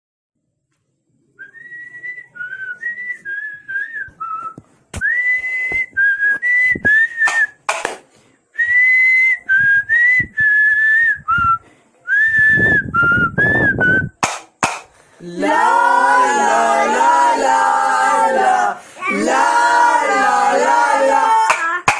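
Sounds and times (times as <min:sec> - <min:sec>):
person whistling a slow melody: 0:01.4 - 0:07.6, 0:08.6 - 0:14.2
sharp percussive hits: 0:07.3 - 0:08.0, 0:14.2 - 0:15.0, 0:21.5 - 0:21.9.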